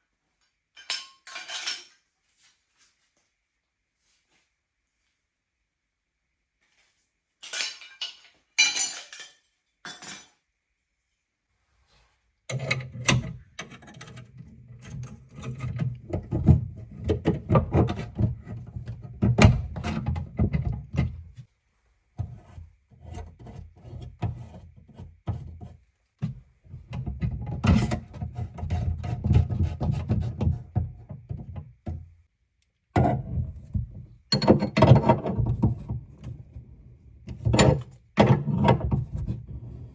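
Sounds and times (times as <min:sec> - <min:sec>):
tools and pipe fittings rattling: 0:00.8 - 0:02.0, 0:34.3 - 0:36.0.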